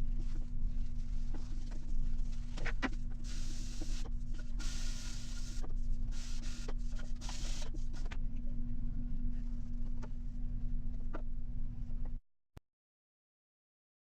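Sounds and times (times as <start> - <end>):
scratchy hiss bursts: 4.6 - 7.8.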